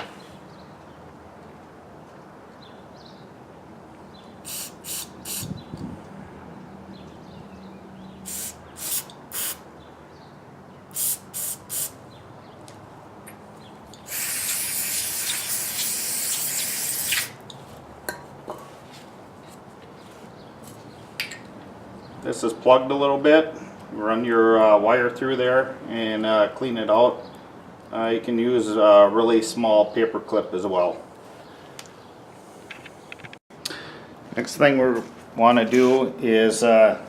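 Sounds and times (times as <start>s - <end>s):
aerosol spray bursts: 4.4s - 5.6s, 8.2s - 9.6s, 10.9s - 12.0s, 14.0s - 17.4s.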